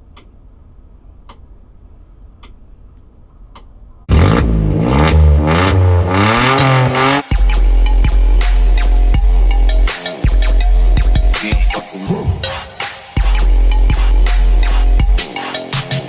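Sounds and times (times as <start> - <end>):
engine revving: 4.1 - 7.5.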